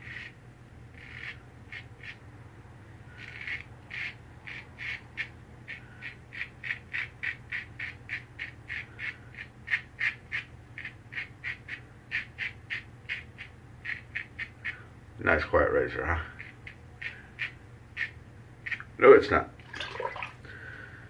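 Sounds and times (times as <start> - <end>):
razor rasping through stubble: 1.0 - 2.2, 3.2 - 14.8.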